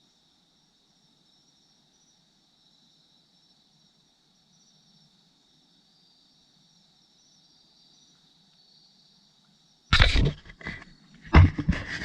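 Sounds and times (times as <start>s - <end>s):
insects chirping: 0.0s - 12.0s
loud rustling and knocking: 9.9s - 12.0s.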